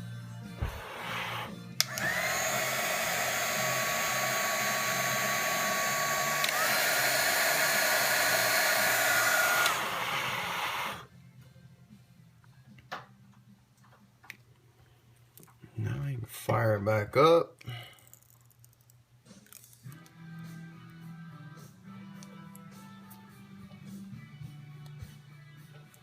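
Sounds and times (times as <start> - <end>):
background music: 0.0 - 17.9, 18.9 - 26.0
hot-air blower whining: 0.6 - 11.1.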